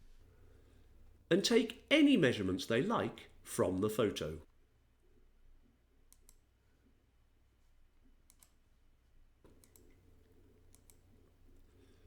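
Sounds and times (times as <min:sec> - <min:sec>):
computer mouse clicks: 0:06.1 - 0:06.5, 0:08.2 - 0:08.6, 0:09.4 - 0:11.2.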